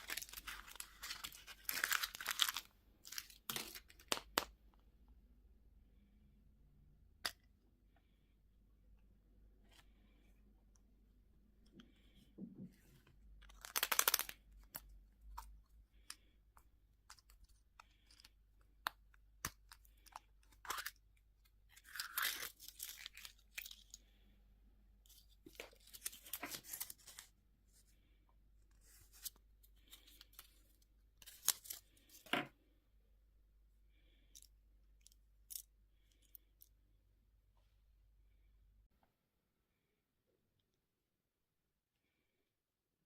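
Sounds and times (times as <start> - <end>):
packaging crinkling while torn: 0.0 - 4.4, 13.5 - 14.4.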